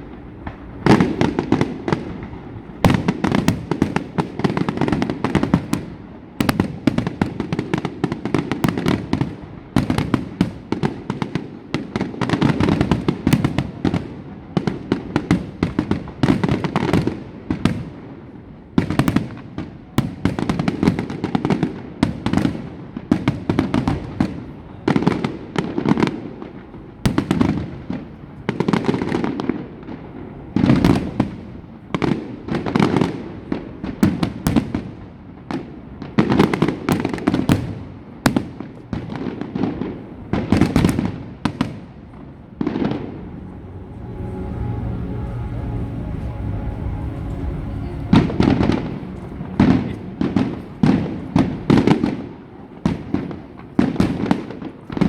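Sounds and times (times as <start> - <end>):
fireworks bangs: 0.0 - 55.0.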